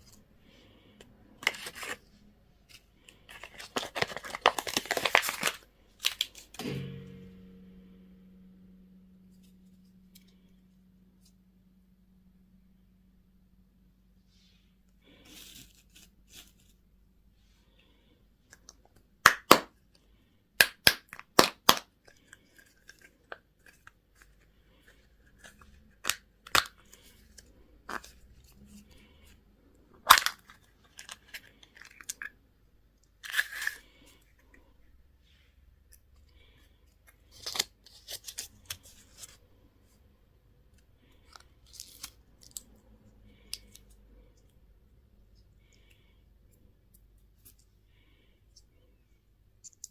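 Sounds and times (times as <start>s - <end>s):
plastic packaging snapping and crinkling: 1.4s - 2.0s, 3.1s - 6.6s, 20.6s - 24.0s, 25.4s - 28.1s, 30.0s - 32.3s, 41.2s - 42.7s
packaging rustling: 2.7s - 6.6s.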